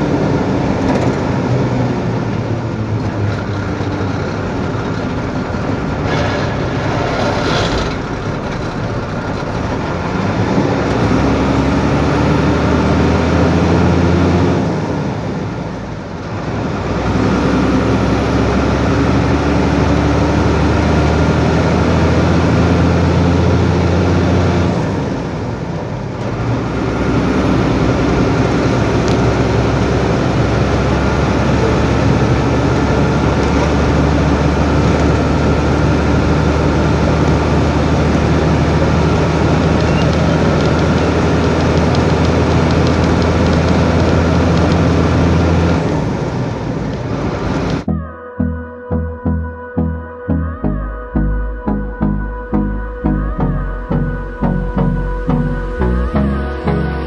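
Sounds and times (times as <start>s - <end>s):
road noise: 0.0s - 48.1s, 53.2s - 57.0s
truck engine running: 0.0s - 57.0s.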